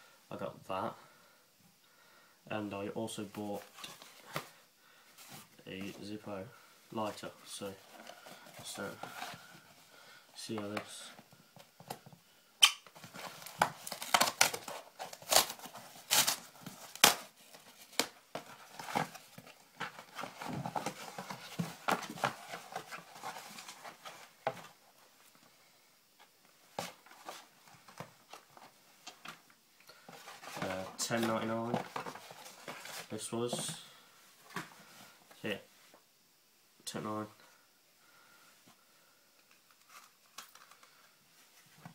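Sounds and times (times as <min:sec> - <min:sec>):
packaging crinkling and rustling: 0:12.9 - 0:24.8.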